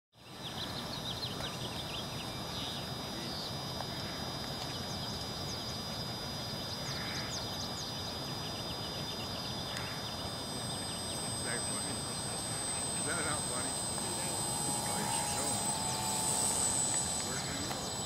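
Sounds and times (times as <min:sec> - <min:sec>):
small birds chirping: 0:00.2 - 0:18.0.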